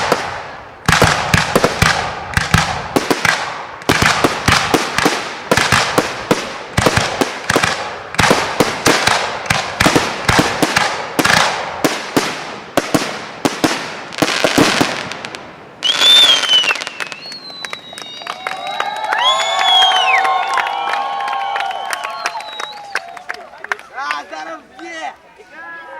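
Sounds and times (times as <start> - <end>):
fireworks bangs with crackle: 0.0 - 18.3
firework high wavering whistle: 15.8 - 23.1.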